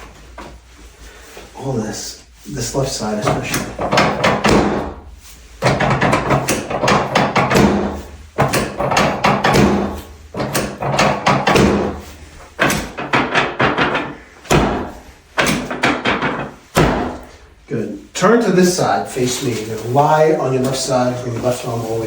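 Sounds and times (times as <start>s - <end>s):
rapid thudding on a back: 3.0s - 17.6s.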